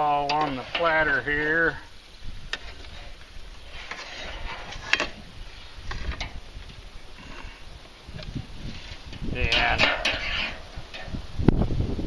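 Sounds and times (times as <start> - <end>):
utensils scraping a grill: 0.0 - 1.4, 2.5 - 6.5, 7.1 - 11.2.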